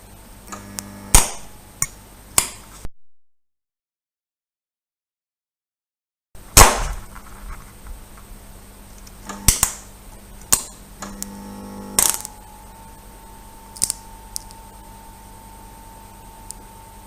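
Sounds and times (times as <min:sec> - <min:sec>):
low steady hum: 0:00.0 - 0:02.9, 0:06.4 - 0:17.0
faint steady tone: 0:08.4 - 0:17.0.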